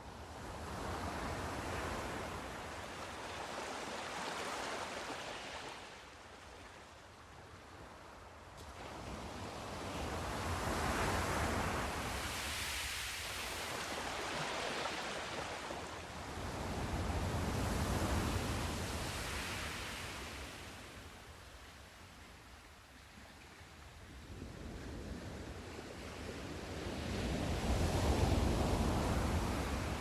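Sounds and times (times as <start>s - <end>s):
waves breaking on shore: 0.9s - 6.8s, 8.6s - 21.0s.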